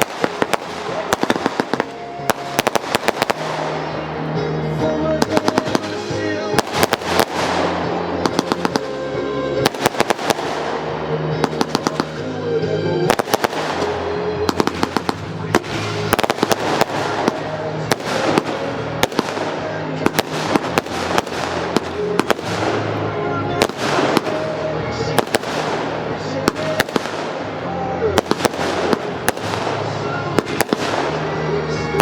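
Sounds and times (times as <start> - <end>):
firework shells bursting: 0.0 - 4.0, 5.2 - 9.0, 9.6 - 12.2, 13.1 - 22.9
loud recorded music: 0.0 - 32.0.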